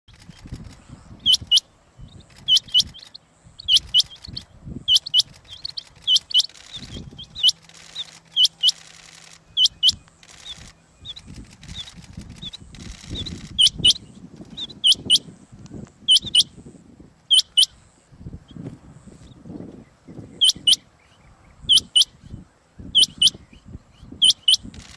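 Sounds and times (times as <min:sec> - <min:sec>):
quail calling sharp double notes: 0:03.6 - 0:08.9.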